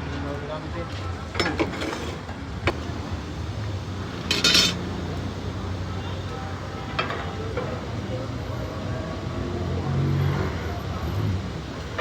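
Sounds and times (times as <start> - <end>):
metal cookware clinking: 4.2 - 5.1.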